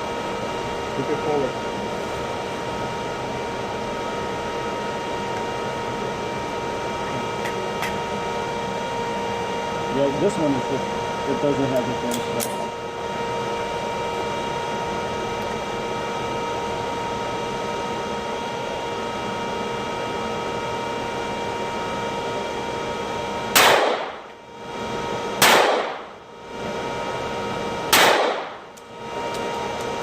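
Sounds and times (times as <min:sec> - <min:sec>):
steady background hum: 0:00.0 - 0:30.0
gunshots: 0:23.6 - 0:24.1, 0:25.4 - 0:26.0, 0:27.9 - 0:28.6.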